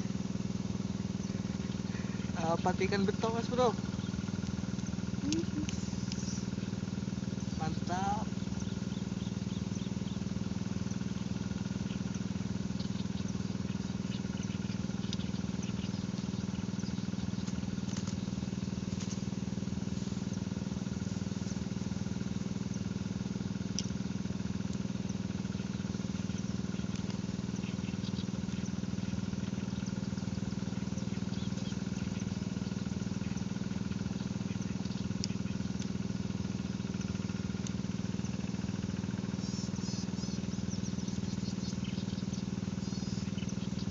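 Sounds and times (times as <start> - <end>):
motor low hum: 0.0 - 43.9
faint scattered clicks: 3.9 - 6.4, 14.4 - 16.3, 23.7 - 24.0, 26.3 - 28.7, 34.5 - 36.0, 36.9 - 37.8.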